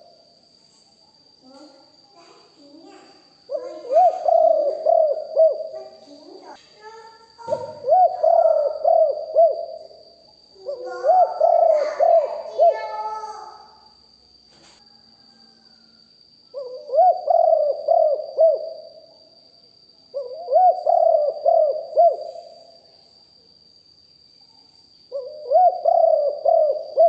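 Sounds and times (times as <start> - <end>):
dove cooing: 3.5 - 6.6, 7.4 - 13.4, 16.5 - 19.0, 20.1 - 22.7, 25.1 - 27.0.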